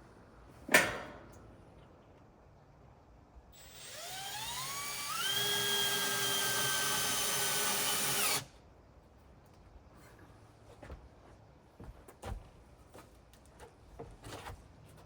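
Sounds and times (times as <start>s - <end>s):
power drill motor whining: 3.6s - 8.5s.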